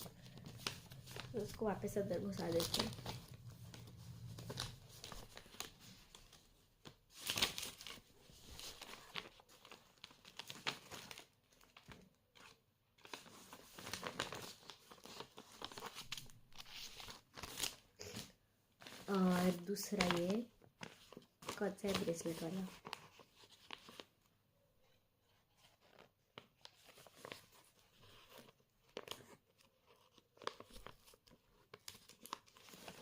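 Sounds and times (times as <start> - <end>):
plastic packaging crinkling: 0.0 - 11.9.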